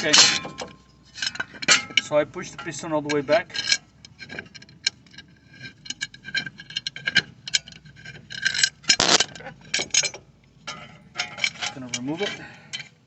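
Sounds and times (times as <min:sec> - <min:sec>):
metal scrape: 0:05.2 - 0:13.0.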